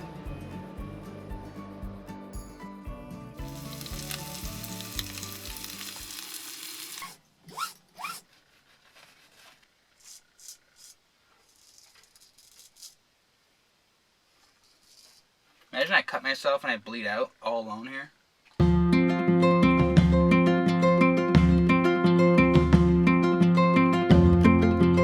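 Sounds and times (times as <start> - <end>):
background music with steady beat: 0.0 - 5.2, 18.6 - 25.0
hiss: 3.4 - 7.2
short rising squeaks: 6.0 - 8.3.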